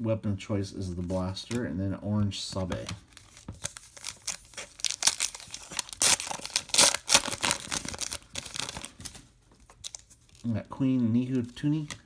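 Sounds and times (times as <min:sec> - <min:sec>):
foil card pack tearing open: 0:03.1 - 0:10.6.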